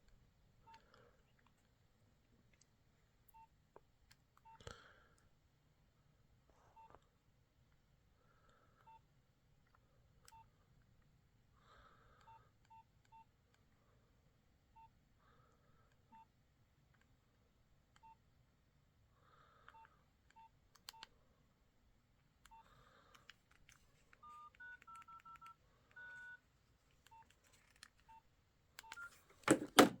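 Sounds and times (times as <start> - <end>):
phone keypad beeps: 24.2 - 26.4, 28.8 - 30.0
two-tone dialing beeps: 24.2 - 26.4, 28.8 - 29.7.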